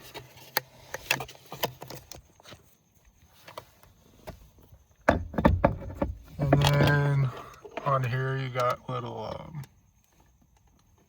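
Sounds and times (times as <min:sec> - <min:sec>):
light clicks and knocks: 0:05.0 - 0:09.8.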